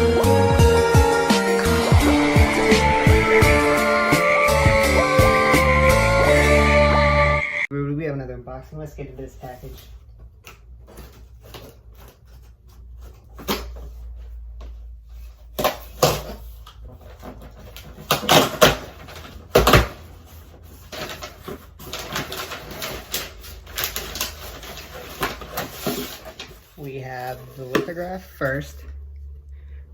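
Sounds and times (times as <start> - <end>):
cardboard crackling and rustling: 9.2 - 28.4.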